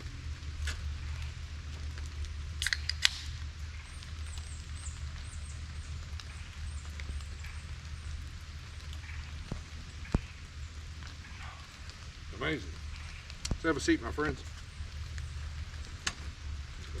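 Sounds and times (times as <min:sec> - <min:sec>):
steady low rumble: 0:00.0 - 0:17.0
water dripping from trees: 0:00.0 - 0:17.0.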